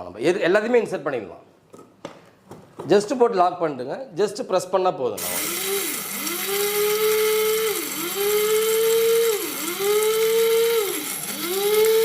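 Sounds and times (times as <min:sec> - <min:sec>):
mixer grinder motor whine: 0:05.2 - 0:12.0.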